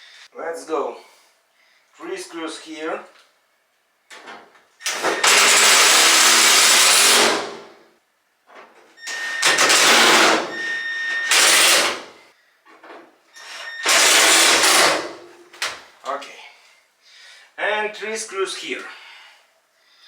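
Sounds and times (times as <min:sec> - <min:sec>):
power drill driving screws: 0:04.8 - 0:07.6, 0:09.0 - 0:12.2, 0:13.4 - 0:15.2.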